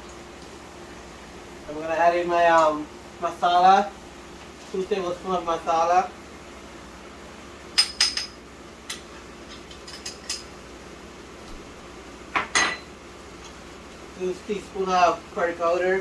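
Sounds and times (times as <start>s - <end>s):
metal spoon clinking on cookware: 7.8s - 9.0s, 9.7s - 10.5s.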